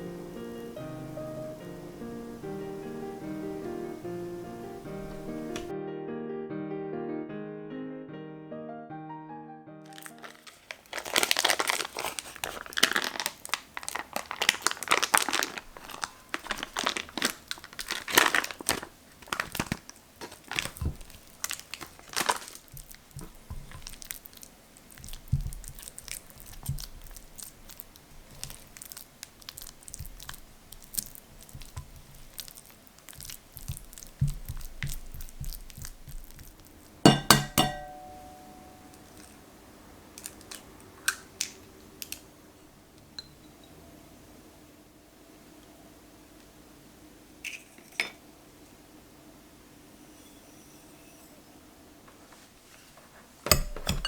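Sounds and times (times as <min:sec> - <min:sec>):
packaging crinkling: 0:09.9 - 0:38.0, 0:38.9 - 0:39.5, 0:40.1 - 0:42.3.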